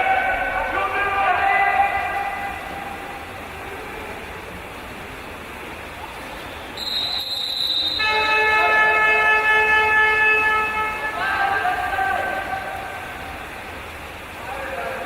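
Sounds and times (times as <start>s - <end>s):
pool hall noise: 0.0s - 15.0s
high shrill whistle tone: 6.8s - 8.7s
loud game horn: 6.8s - 11.9s.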